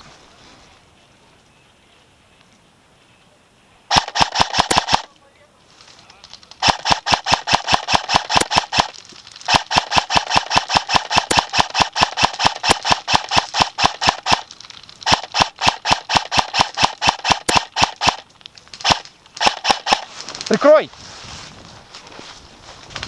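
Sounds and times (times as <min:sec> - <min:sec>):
airsoft guns firing full auto: 0:03.9 - 0:05.1, 0:06.6 - 0:08.9, 0:09.5 - 0:18.2, 0:18.8 - 0:20.1.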